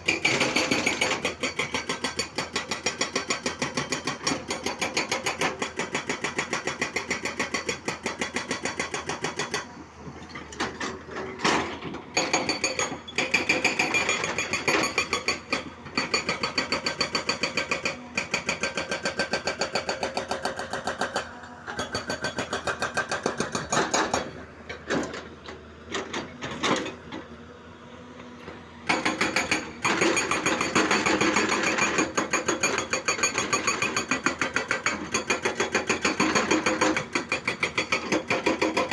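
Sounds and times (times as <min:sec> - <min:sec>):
excavator rapid hammering: 0:00.0 - 0:09.6, 0:28.9 - 0:38.9.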